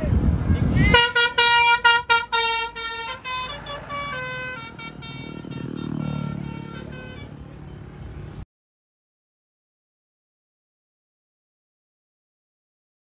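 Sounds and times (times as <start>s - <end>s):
bus musical horn tune: 0.2s - 8.4s.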